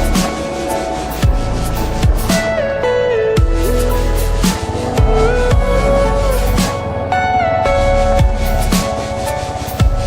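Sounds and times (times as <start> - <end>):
electronic music with heavy sub-bass: 0.0 - 10.0.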